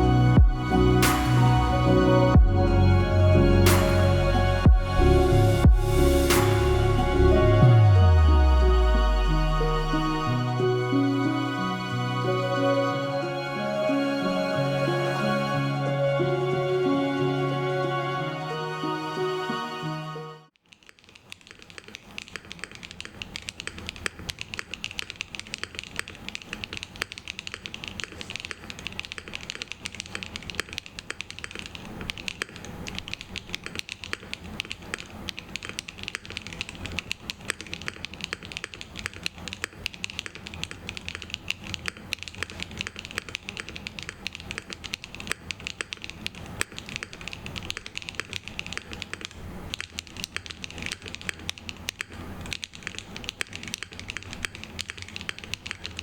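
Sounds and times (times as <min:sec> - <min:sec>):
mechanical keyboard typing: 0:20.7 - 0:56.0.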